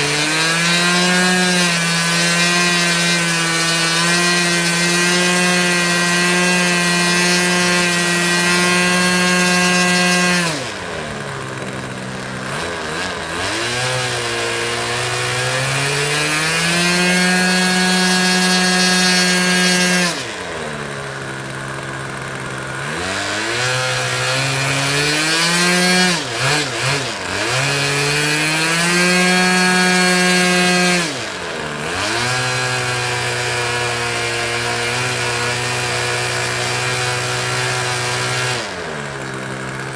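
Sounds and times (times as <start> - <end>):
small plane engine revving: 0.0 - 39.9.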